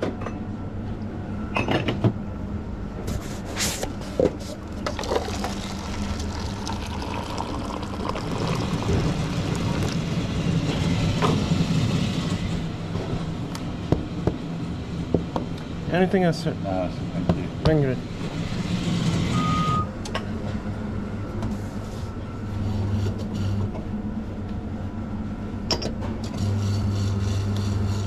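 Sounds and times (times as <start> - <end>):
portafilter and cup clatter: 4.8 - 10.0
liquid pouring into cup: 4.9 - 10.0
espresso machine hissing: 22.5 - 23.7, 26.4 - 28.0.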